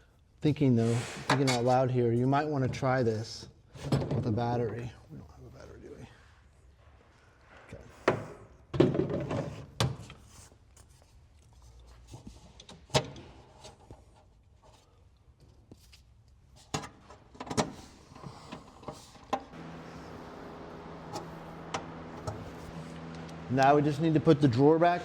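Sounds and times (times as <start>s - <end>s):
knocks and clicks handling parts: 16.6s - 19.6s
steady low hum: 19.5s - 25.0s.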